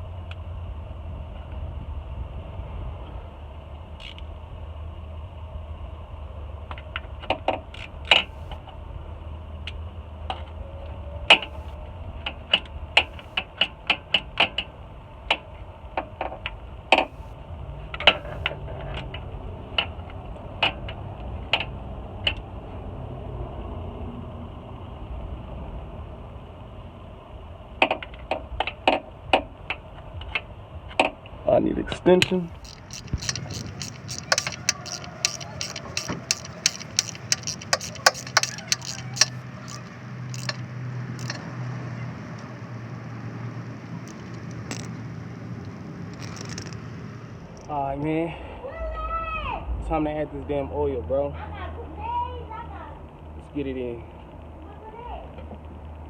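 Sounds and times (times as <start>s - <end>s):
metallic clicks of hand tools: 32.6s - 40.6s, 41.2s - 41.5s, 44.1s - 45.0s, 46.1s - 46.8s.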